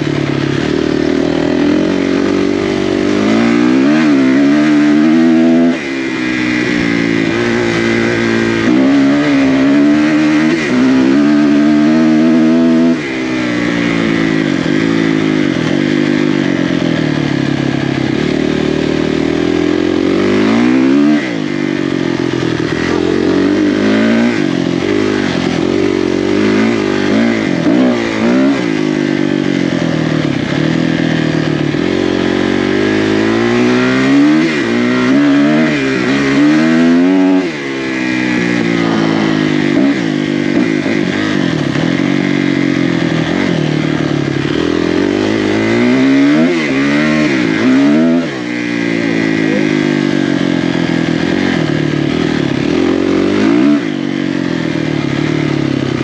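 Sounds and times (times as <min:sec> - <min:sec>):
dirt bike engine shifting gears: 0:00.0 - 0:56.0.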